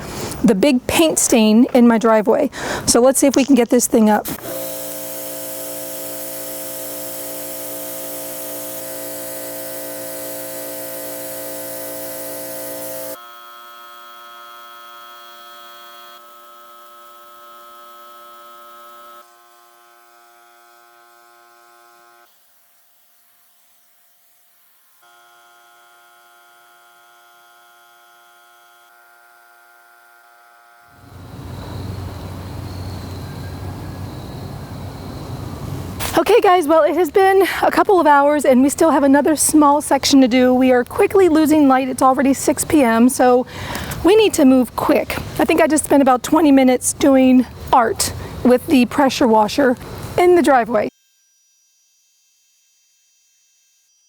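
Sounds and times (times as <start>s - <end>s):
water spray hissing: 2.6s - 13.2s, 31.0s - 50.9s
pressure washer motor hum: 2.6s - 19.2s, 31.0s - 50.9s.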